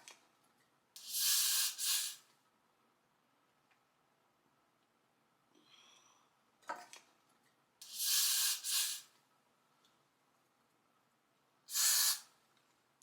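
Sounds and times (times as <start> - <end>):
aerosol spray hissing: 1.0 - 2.2, 7.8 - 9.1, 11.7 - 12.3.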